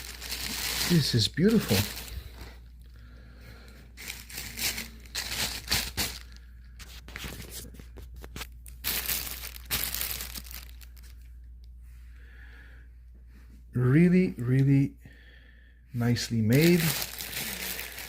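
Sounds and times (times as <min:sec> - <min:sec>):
packaging crinkling: 0:00.0 - 0:02.6, 0:04.0 - 0:11.2, 0:16.5 - 0:18.0.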